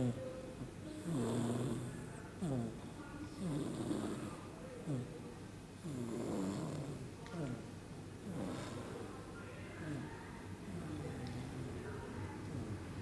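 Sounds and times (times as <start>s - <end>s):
baby snoring: 1.0s - 2.8s, 3.4s - 5.1s, 5.8s - 7.6s, 8.2s - 9.0s.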